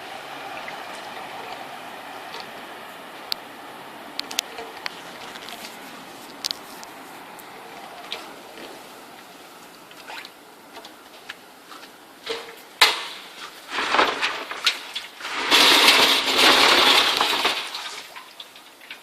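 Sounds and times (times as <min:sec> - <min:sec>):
debris clinking and rattling: 0:12.3 - 0:19.0.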